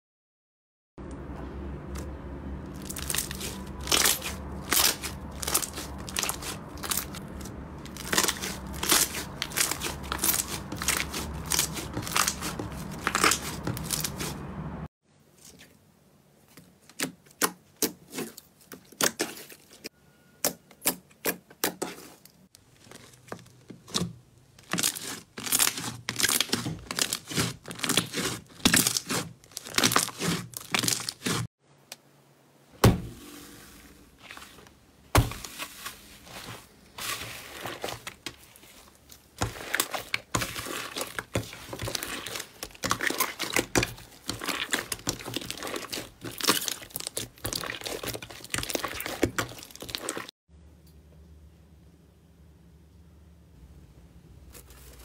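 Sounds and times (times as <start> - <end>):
slime crackling and popping: 2.8 - 14.3, 24.6 - 31.4, 39.4 - 50.3.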